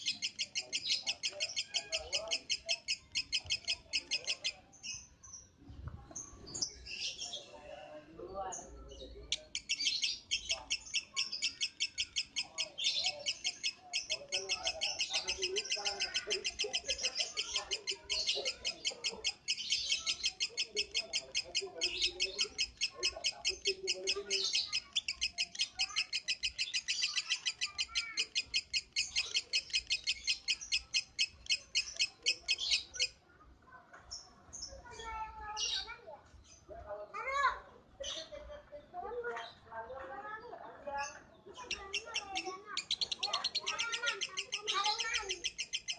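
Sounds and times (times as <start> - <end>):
lovebird shrill chirps: 9.4 - 33.1, 41.6 - 45.9.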